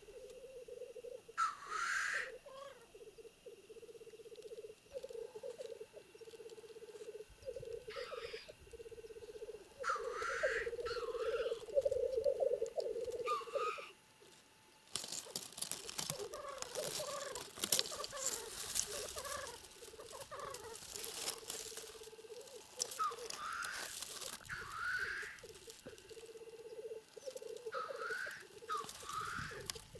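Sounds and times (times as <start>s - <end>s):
bubbling grouse cooing: 0.0s - 14.0s, 15.1s - 29.9s
hissing bird calls: 0.0s - 14.2s, 15.2s - 29.9s
rough rustling noise: 14.2s - 29.9s.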